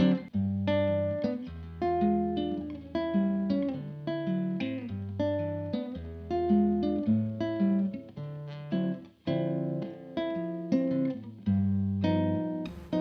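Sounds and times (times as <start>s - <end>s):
acoustic guitar plucked chords: 0.0s - 13.0s
bass line: 12.7s - 13.0s.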